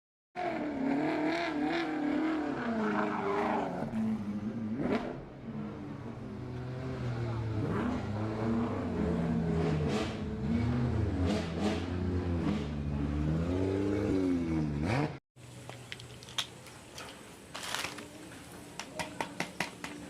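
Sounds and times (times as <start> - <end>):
car engine revving: 0.4 - 15.2
plastic toys clicking and rattling: 15.7 - 18.1.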